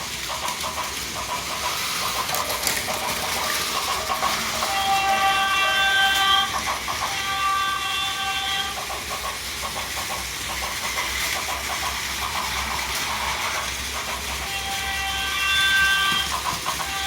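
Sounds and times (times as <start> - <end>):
toy train electronic horn: 2.1 - 9.2, 12.4 - 17.0.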